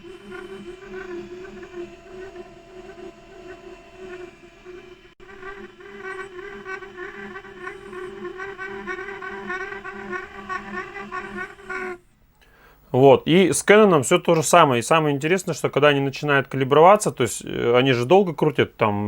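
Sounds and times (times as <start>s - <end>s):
laser printer running: 0.0s - 12.1s
pulsing squeal of printer cartridges: 0.0s - 14.6s.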